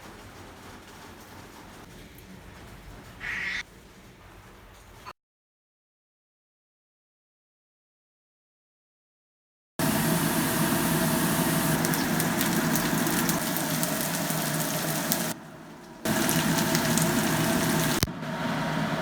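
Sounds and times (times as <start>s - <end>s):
noodles sizzling in a pan: 9.8s - 18.1s.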